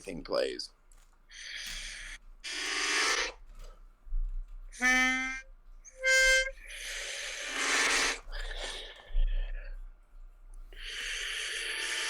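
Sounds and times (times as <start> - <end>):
pitch pipe notes: 4.7 - 8.2.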